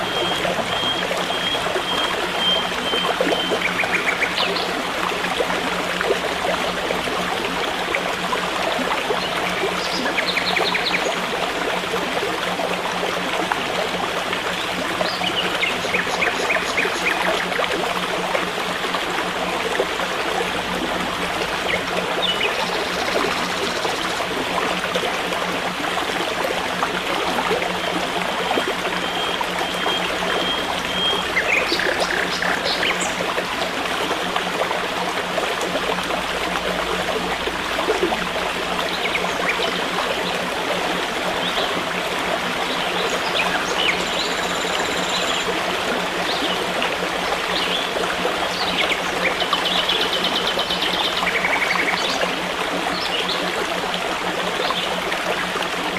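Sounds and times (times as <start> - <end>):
stream of running water: 0.0 - 55.9
birds chirping: 21.7 - 24.3.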